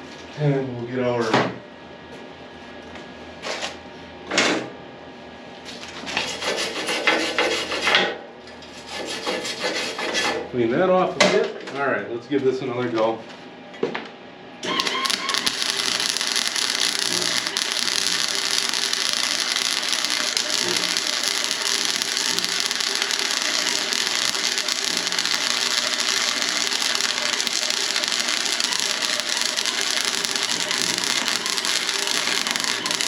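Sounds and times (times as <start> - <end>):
welder arc crackling: 14.6 - 33.0.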